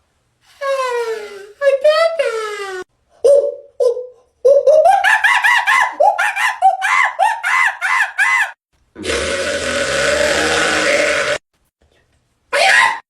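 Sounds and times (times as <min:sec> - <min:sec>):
man making rasping sound: 0:00.5 - 0:02.6, 0:09.0 - 0:11.4.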